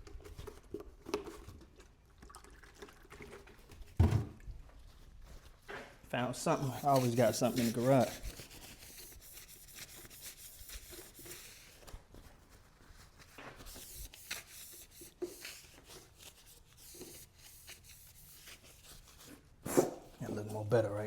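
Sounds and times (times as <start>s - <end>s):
cloth rubbing on metal: 6.4s - 21.0s.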